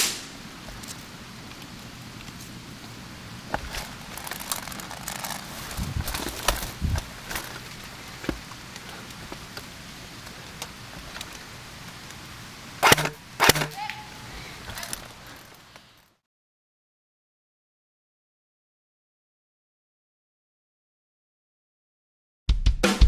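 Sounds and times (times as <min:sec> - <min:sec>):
footsteps crunching dry leaves: 0:03.5 - 0:09.8
sharp loud clicks: 0:12.8 - 0:13.8.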